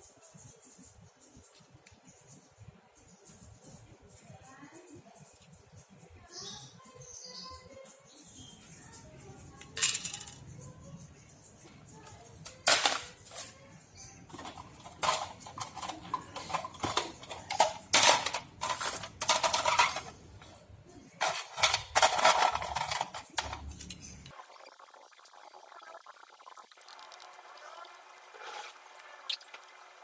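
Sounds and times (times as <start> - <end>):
tools and plastic parts clinking: 9.6 - 10.5, 12.0 - 13.7, 14.3 - 24.3.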